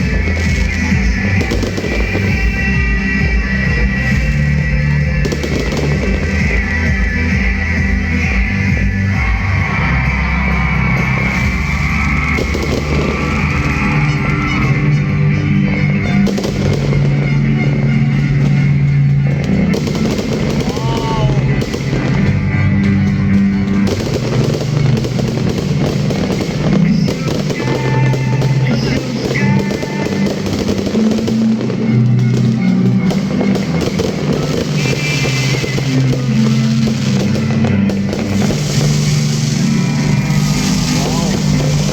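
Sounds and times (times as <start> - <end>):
fireworks popping and crackling: 0.0 - 41.9
rock music with drums and guitar: 0.0 - 41.9.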